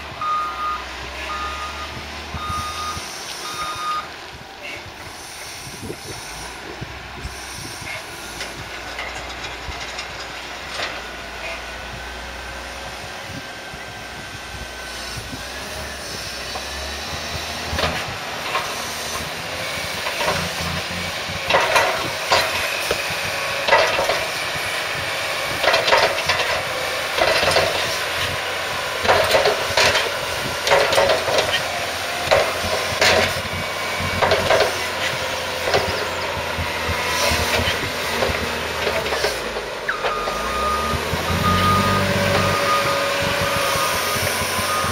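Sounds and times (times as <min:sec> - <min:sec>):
diesel machinery droning: 0:00.0 - 0:44.9
rattling clanking bursts: 0:16.5 - 0:24.6, 0:25.5 - 0:28.4, 0:29.0 - 0:44.9.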